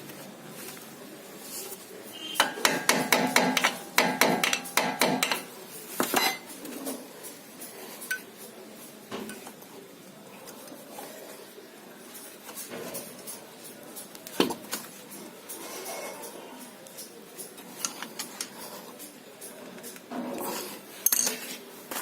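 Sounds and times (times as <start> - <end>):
screwdriver striking metal: 2.4 - 5.5.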